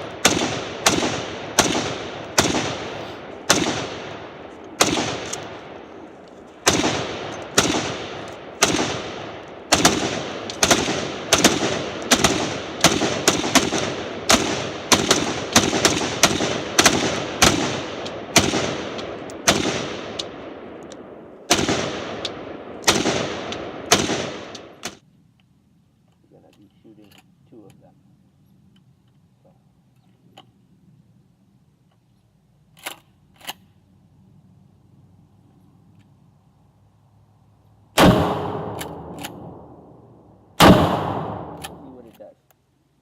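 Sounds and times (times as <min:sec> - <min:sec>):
rapid gunfire with echo: 0:00.0 - 0:05.8, 0:06.6 - 0:20.7, 0:21.5 - 0:24.8, 0:38.0 - 0:39.8, 0:40.6 - 0:42.0.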